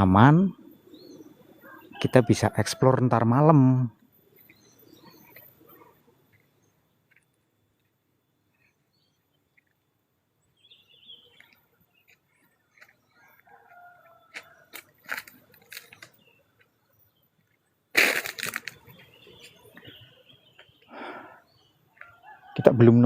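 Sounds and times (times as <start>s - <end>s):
faint bird calls: 4.1s - 9.8s, 10.5s - 22.7s
twigs snapping: 14.3s - 16.2s, 18.0s - 19.0s.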